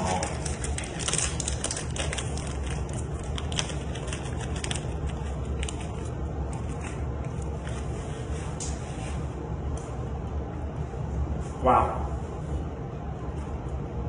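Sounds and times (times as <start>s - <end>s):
snack bag crinkling: 0.0s - 7.0s
steady low hum: 0.0s - 14.0s.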